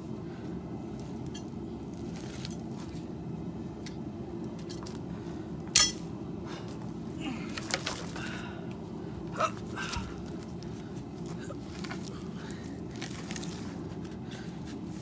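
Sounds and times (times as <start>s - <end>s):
loud sharp metallic clank: 5.8s - 6.0s
metal tools clinking and knocking: 5.8s - 6.0s.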